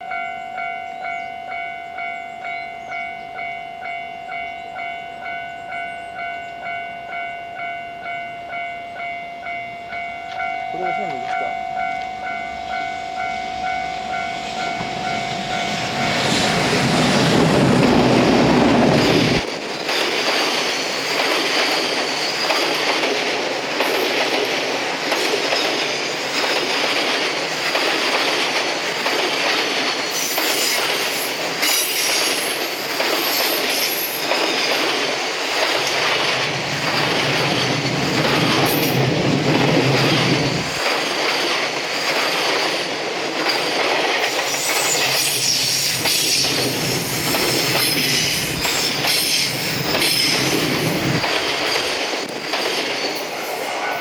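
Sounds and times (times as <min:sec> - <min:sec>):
steady pitched tone: 0:00.0 - 0:19.4
train low rumble: 0:00.0 - 0:54.0
wheels clacking over rail joints: 0:10.2 - 0:53.6
high wheel squeal: 0:20.7 - 0:22.8, 0:30.0 - 0:34.3, 0:44.3 - 0:54.0.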